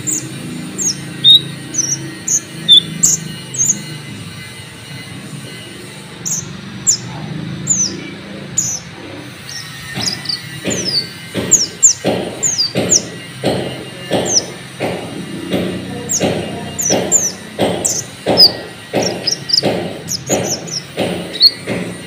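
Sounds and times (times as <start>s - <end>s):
sunbird high chirps: 0.0s - 4.3s, 5.9s - 13.4s, 16.0s - 21.7s
rhythmic rasping bursts: 0.0s - 22.0s.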